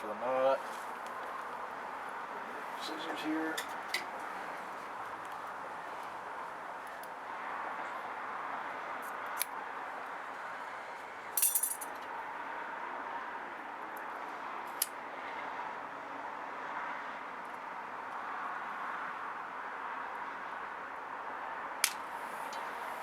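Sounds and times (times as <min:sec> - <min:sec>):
small metal objects jingling: 0:11.4 - 0:12.0.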